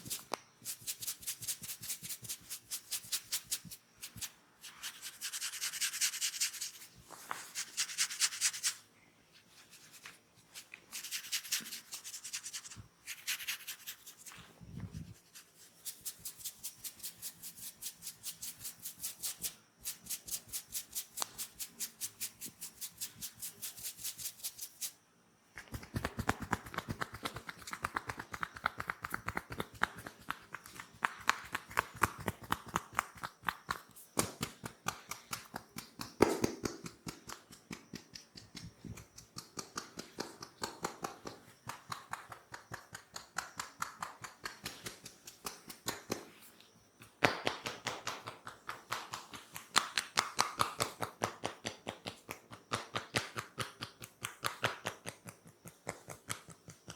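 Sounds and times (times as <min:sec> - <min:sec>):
hands tapping on body: 0:25.6 - 0:46.3, 0:47.0 - 0:56.9.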